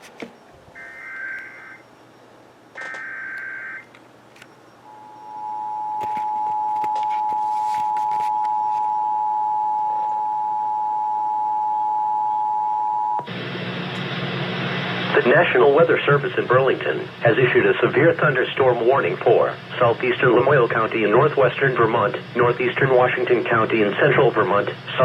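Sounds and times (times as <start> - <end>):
warbling data tones: 0.8 - 2.0
broadcast audio: 13.2 - 25.0.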